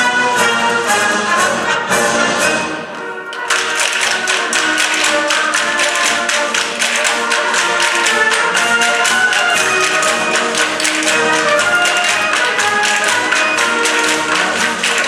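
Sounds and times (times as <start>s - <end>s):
orchestral music: 0.0s - 15.0s
tapping percussion: 0.4s - 15.0s.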